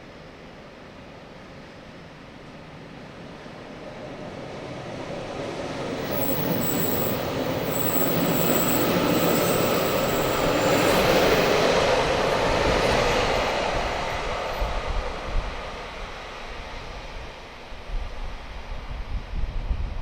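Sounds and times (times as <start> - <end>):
electric train running past: 0.0 - 19.9
faint thin squeal: 5.9 - 11.8.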